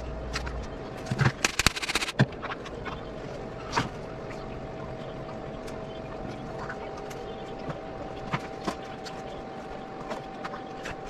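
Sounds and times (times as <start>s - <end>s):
sharp clicks and knocks: 1.4s - 2.2s.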